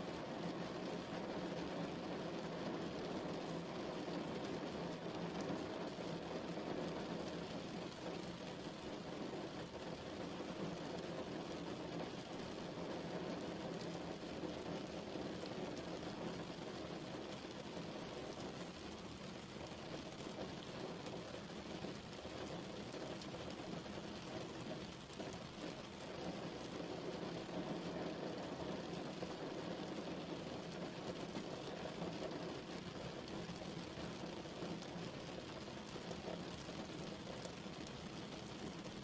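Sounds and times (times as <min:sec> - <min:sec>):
steady rain falling: 0:00.0 - 0:39.0.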